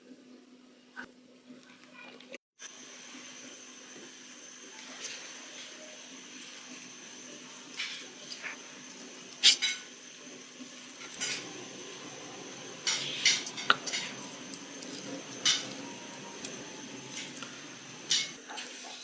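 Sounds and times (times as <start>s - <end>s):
kitchen utensils and dishes clinking: 7.4s - 19.0s.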